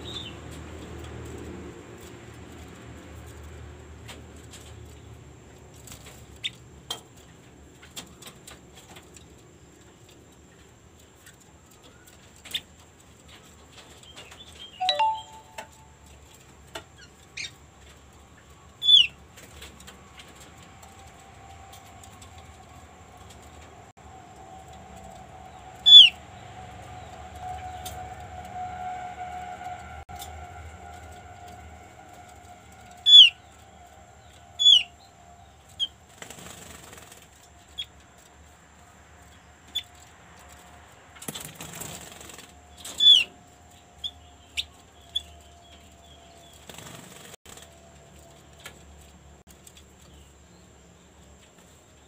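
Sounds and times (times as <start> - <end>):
bird chirping: 14.1 - 15.9, 25.5 - 26.2.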